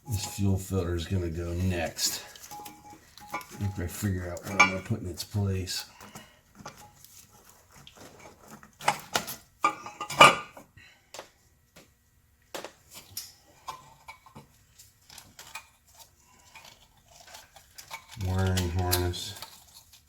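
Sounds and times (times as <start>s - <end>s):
metal tools clinking and clattering: 0.1s - 0.6s, 1.8s - 5.0s.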